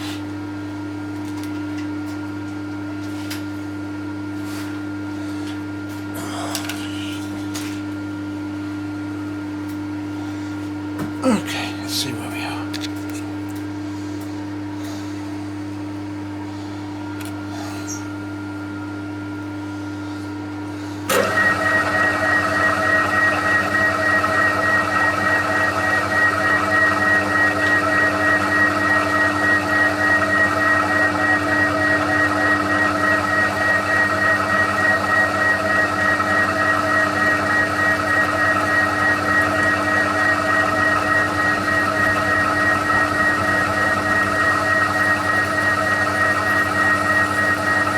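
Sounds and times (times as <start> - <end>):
milling machine humming: 21.1 - 47.9.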